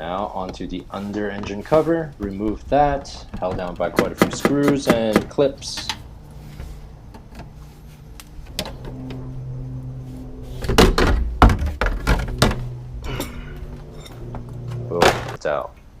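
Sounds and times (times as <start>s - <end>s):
steady low hum: 5.2s - 16.0s.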